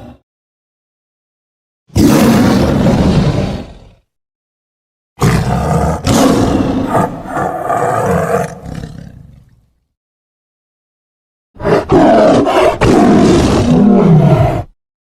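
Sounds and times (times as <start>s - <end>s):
tiger roaring: 1.9s - 4.0s, 5.2s - 9.3s, 11.6s - 14.8s.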